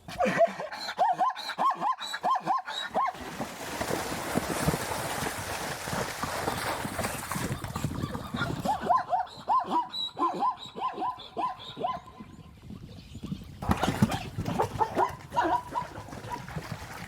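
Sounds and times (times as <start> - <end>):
zebra yipping barks: 0.4 - 3.2, 8.4 - 12.2, 14.6 - 16.4.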